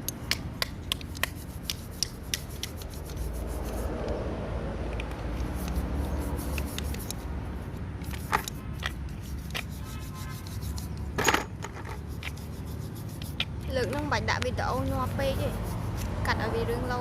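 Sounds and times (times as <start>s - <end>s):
metal parts clinking: 8.0s - 9.0s, 11.2s - 12.0s.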